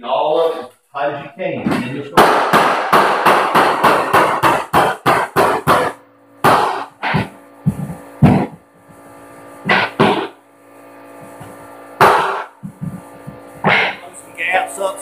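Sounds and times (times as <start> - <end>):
mallet striking floorboards: 1.6 - 8.6, 11.4 - 14.0.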